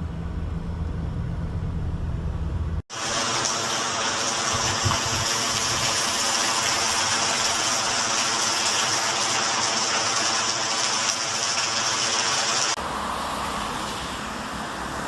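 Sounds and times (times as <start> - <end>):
rain falling: 2.9 - 12.8.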